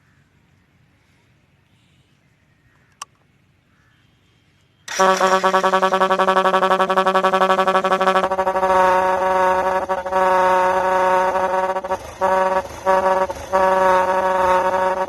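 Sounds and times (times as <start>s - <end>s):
loud motorcycle horn blaring: 4.9s - 15.0s.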